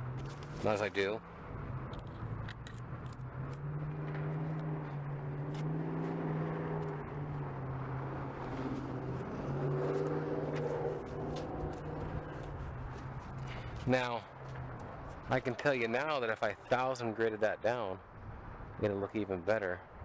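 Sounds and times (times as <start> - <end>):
vehicle engine running: 0.0 - 15.6.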